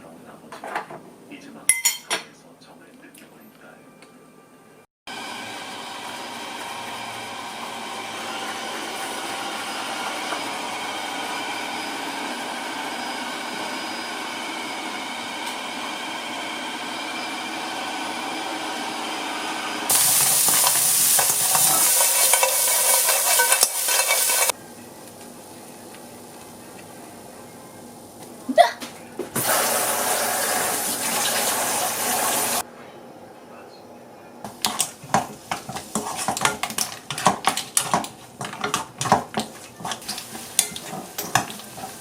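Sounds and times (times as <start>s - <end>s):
food sizzling in a frying pan: 19.8s - 26.7s, 29.4s - 32.6s, 34.5s - 42.0s.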